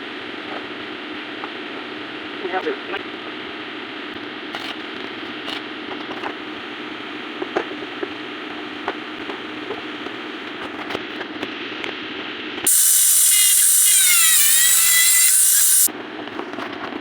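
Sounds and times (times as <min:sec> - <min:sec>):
welding arc hissing: 0:12.7 - 0:15.9.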